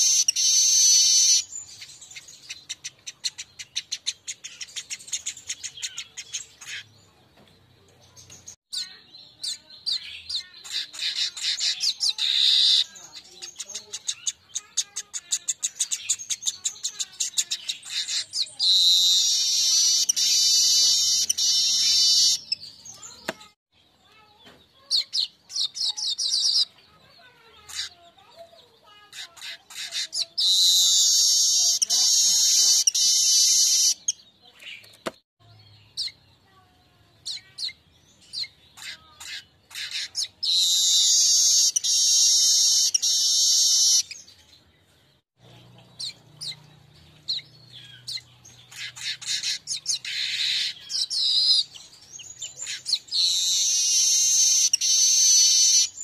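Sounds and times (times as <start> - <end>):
bird chips and buzzing trills: 0.0 - 6.9, 8.2 - 23.3, 37.2 - 44.4, 45.4 - 56.0.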